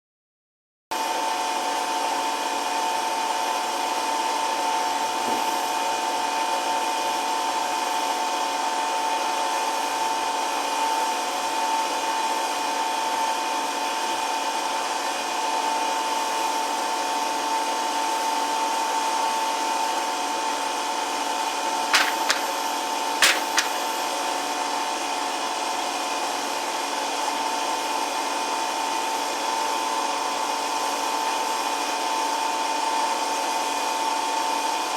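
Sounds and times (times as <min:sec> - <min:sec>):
sharp knocks: 0:22.0 - 0:22.6, 0:23.2 - 0:23.9.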